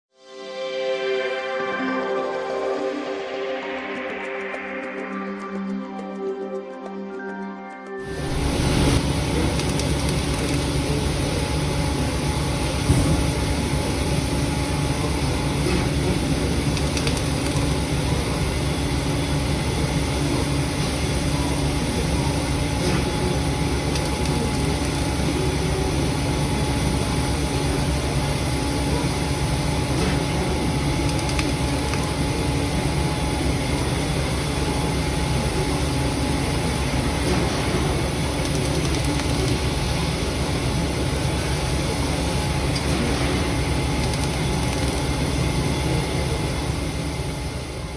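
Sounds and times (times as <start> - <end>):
industrial machinery droning: 0.2 - 47.9.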